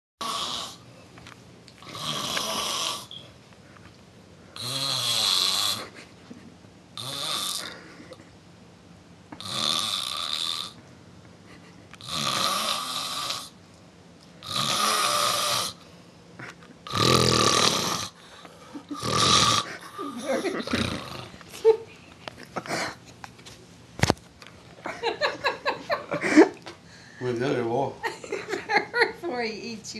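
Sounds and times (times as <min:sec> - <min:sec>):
person snoring: 0:00.2 - 0:00.8, 0:01.8 - 0:03.1, 0:04.6 - 0:06.0, 0:07.0 - 0:08.2, 0:09.4 - 0:10.8, 0:12.0 - 0:13.6, 0:14.4 - 0:15.8, 0:16.8 - 0:21.4.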